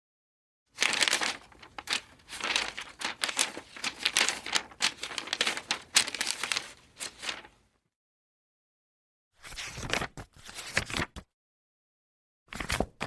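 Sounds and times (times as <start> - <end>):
book pages being turned: 0.8 - 7.6, 9.5 - 11.2.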